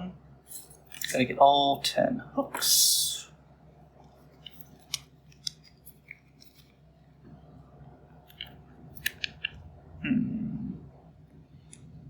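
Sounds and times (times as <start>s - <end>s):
small plastic clicks and snaps: 8.3s - 9.6s.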